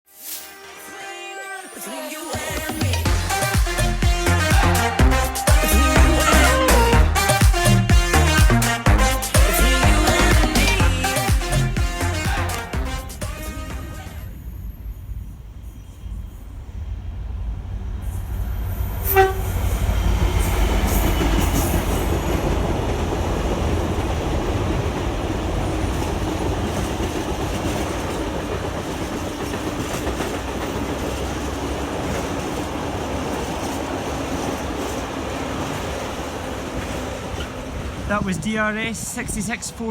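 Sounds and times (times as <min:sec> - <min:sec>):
locomotive horn blast: 0:03.1 - 0:14.6, 0:19.0 - 0:19.8
diesel locomotive engine: 0:09.6 - 0:39.9
train wagons rumbling and clattering: 0:16.4 - 0:39.9.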